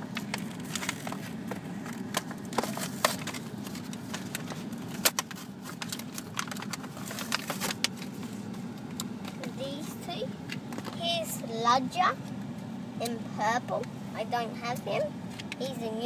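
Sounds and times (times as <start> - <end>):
steady low hum: 0.0 - 16.0
plastic packaging crinkling: 0.1 - 8.3.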